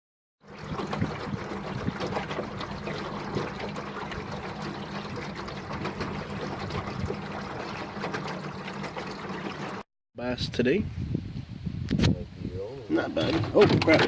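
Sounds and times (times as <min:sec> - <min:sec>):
water splashing and trickling: 0:00.4 - 0:09.9, 0:12.9 - 0:14.0.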